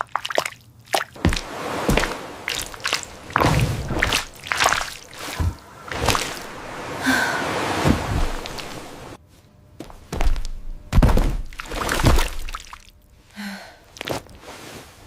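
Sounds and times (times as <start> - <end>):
wet clicks and squishes: 0.0 - 2.0.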